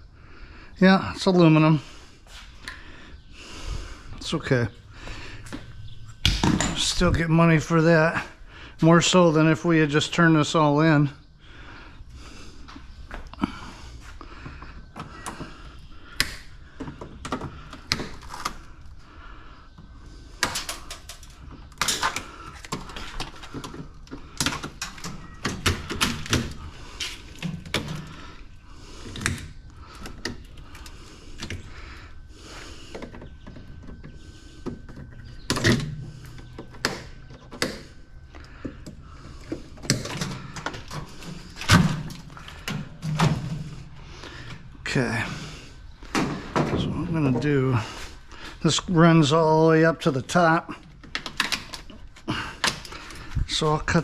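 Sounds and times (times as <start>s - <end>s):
metal parts clanking and rattling: 20.4s - 28.2s.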